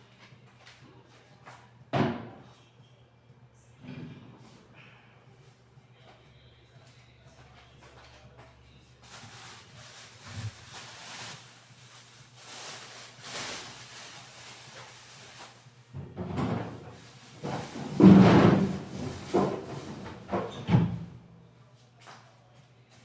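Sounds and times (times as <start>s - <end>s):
soft rustling: 9.0s - 15.8s, 16.8s - 18.0s
containers knocking and clunking: 15.9s - 21.2s.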